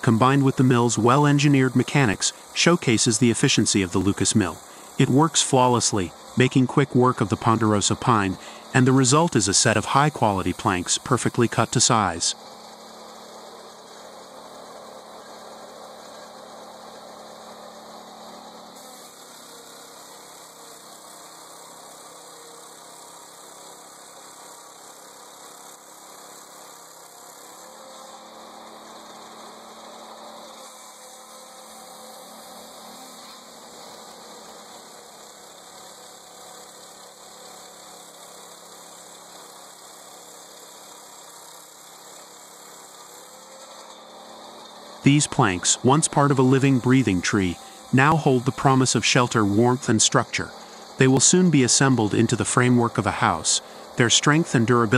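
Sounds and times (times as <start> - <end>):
petrol engine running: 43.5 - 54.9.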